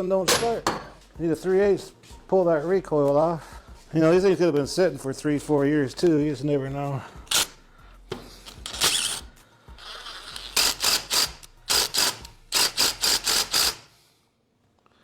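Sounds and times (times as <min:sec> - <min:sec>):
socket ratchet clicking: 0:08.4 - 0:13.9.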